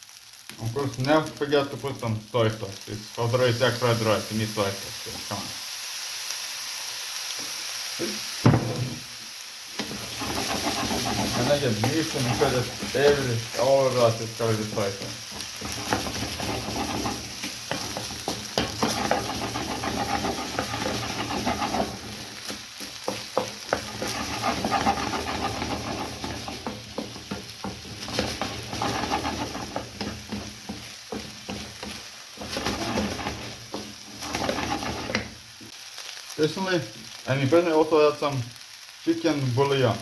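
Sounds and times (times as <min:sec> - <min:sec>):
rice sizzling in a pan: 0:00.0 - 0:40.0
utensil scraping pan: 0:09.8 - 0:35.4.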